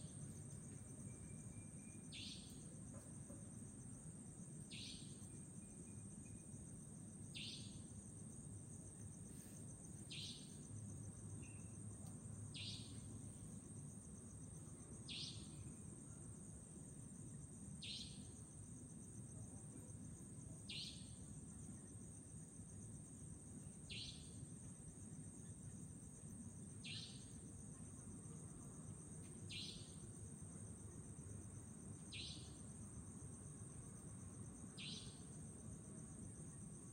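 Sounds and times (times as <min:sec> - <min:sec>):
high insect trill: 0:00.0 - 0:36.9
nightjar calling: 0:02.0 - 0:02.6, 0:04.7 - 0:05.2, 0:07.4 - 0:07.8, 0:10.1 - 0:10.5, 0:12.6 - 0:13.0, 0:15.1 - 0:15.6, 0:17.8 - 0:18.2, 0:20.7 - 0:21.0, 0:23.9 - 0:24.2, 0:26.8 - 0:27.3, 0:29.5 - 0:29.9, 0:32.1 - 0:32.5, 0:34.8 - 0:35.2.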